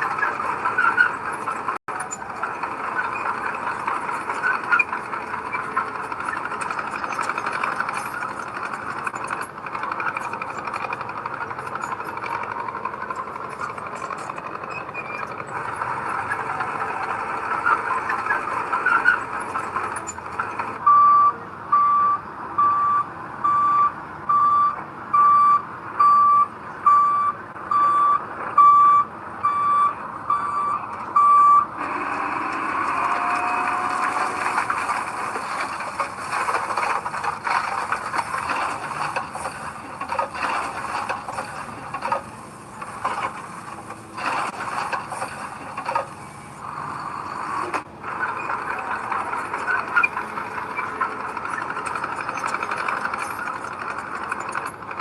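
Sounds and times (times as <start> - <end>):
diesel engine running: 0.0 - 55.0
reversing alarm beeps: 20.8 - 31.7.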